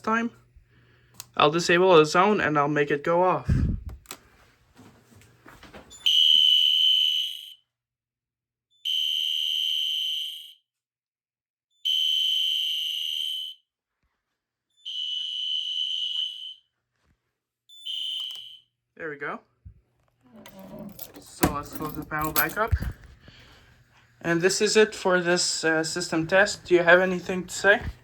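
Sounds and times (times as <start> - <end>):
high-pitched alarm panel beeps: 17.9 - 18.6.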